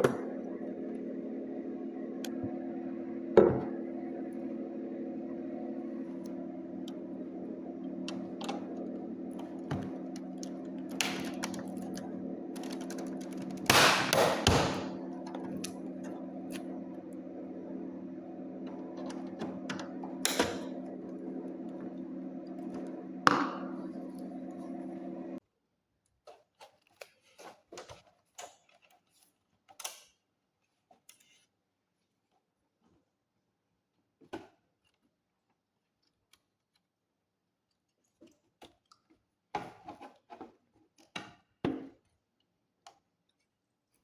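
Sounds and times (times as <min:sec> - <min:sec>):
steady low hum: 0:00.0 - 0:25.4.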